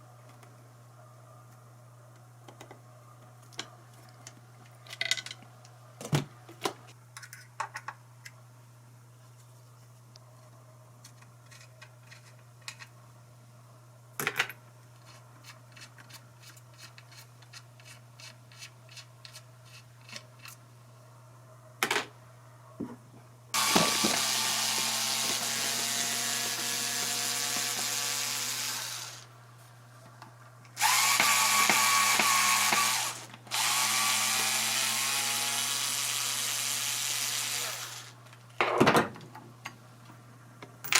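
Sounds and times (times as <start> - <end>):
power drill running: 23.6 - 29.3, 30.8 - 38.2.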